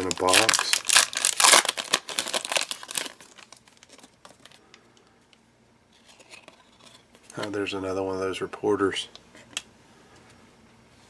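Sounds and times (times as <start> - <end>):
foil wrapper crinkling and tearing: 0.0 - 4.6.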